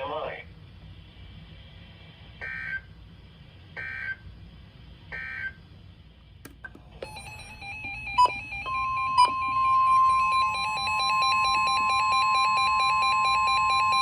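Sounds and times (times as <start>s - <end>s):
alternating electronic alert tone: 7.0s - 14.0s
steady high alarm tone: 7.0s - 14.0s.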